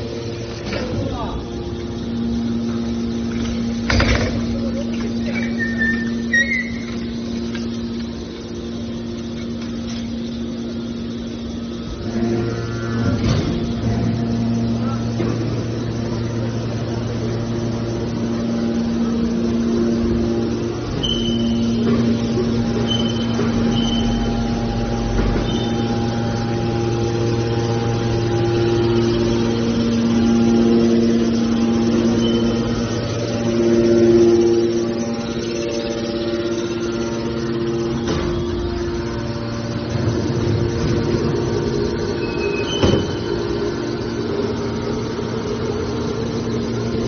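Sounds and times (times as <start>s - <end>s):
higher steady tone: 0.0s - 47.0s
machine humming: 0.0s - 47.0s
brief high squeak: 5.4s - 6.9s, 21.0s - 21.6s.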